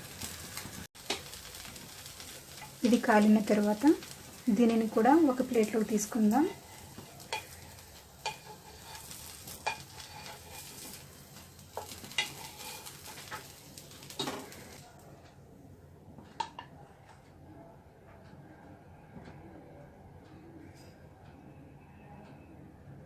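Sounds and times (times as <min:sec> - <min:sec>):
batter sizzling on a pan: 0:00.0 - 0:15.0
spatula scraping and tapping pan: 0:02.2 - 0:14.8, 0:16.2 - 0:17.2.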